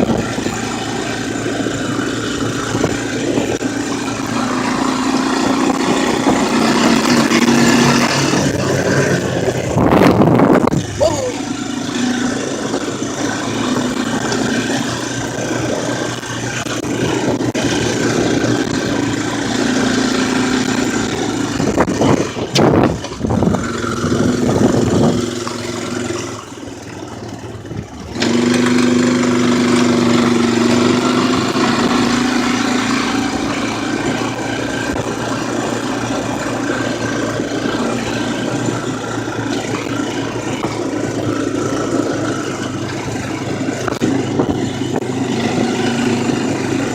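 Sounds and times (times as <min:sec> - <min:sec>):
atv engine revving: 0:00.0 - 0:46.9.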